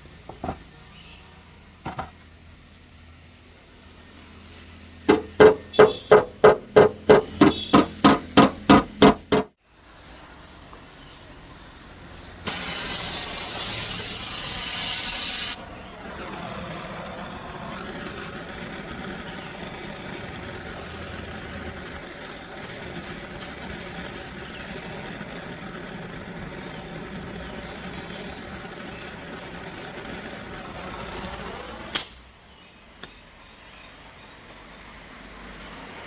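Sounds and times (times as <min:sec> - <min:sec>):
loud hiss: 0:11.7 - 0:32.3.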